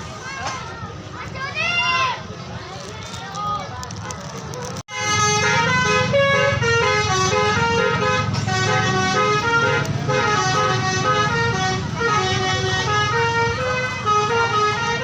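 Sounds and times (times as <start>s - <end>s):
bus engine rumble: 0.0s - 15.0s
bus horn playing a tune: 4.9s - 15.0s.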